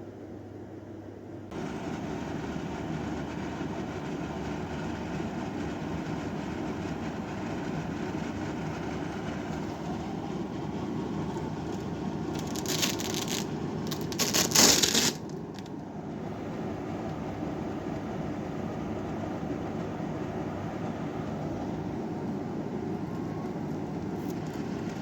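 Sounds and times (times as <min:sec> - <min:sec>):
air conditioner running: 0:00.0 - 0:25.0
rustling handling noise: 0:11.3 - 0:15.9.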